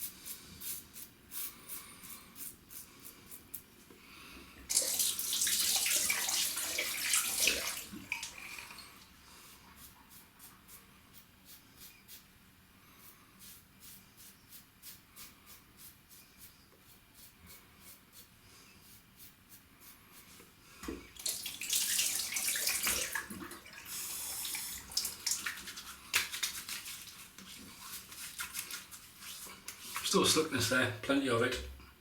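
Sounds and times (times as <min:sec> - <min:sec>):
water tap running: 0:04.7 - 0:09.0, 0:21.1 - 0:27.2.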